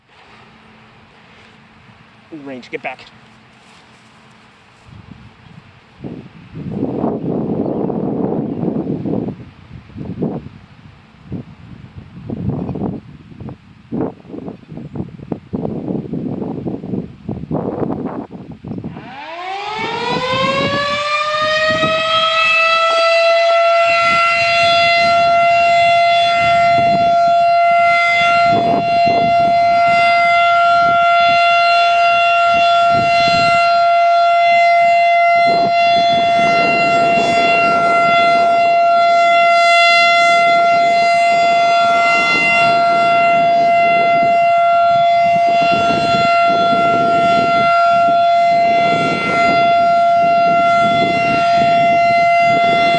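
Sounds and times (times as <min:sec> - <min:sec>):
outdoor warning siren winding up: 0:18.8 - 0:52.9.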